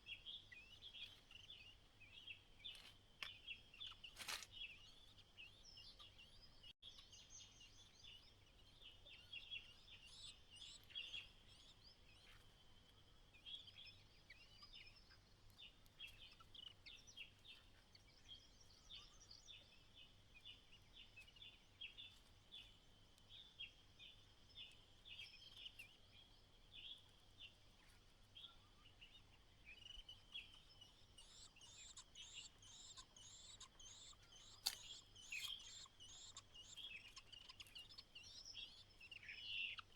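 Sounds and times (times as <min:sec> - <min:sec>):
birds chirping: 0:24.6 - 0:39.9.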